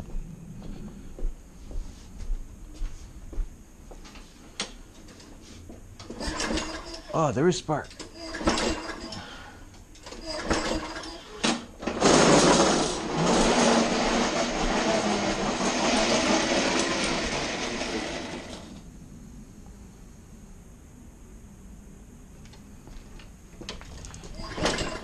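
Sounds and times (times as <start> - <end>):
lawn mower engine running: 6.0 - 7.2, 7.8 - 9.4, 10.0 - 18.8, 24.0 - 25.0.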